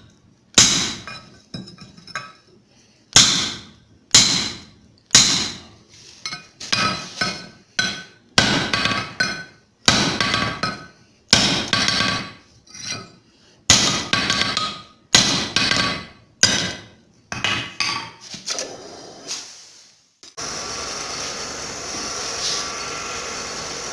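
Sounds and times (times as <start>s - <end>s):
hammer striking hot steel on anvil: 0.6s - 1.3s, 3.2s - 5.7s, 6.8s - 12.4s, 13.7s - 16.9s.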